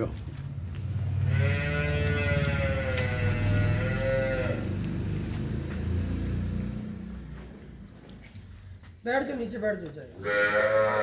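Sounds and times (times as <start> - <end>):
cow mooing: 1.3 - 4.7, 10.2 - 11.0.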